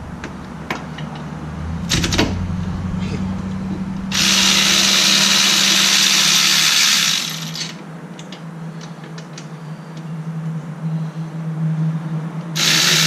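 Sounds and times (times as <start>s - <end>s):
shop tool running: 1.9s - 2.5s, 3.7s - 7.8s, 12.6s - 13.0s.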